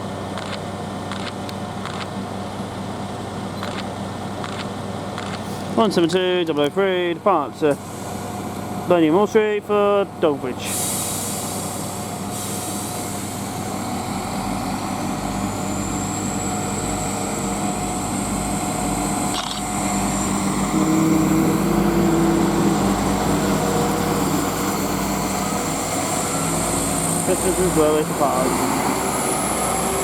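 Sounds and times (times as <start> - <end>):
diesel train departing: 0.0 - 30.0
engine high whine: 10.7 - 30.0.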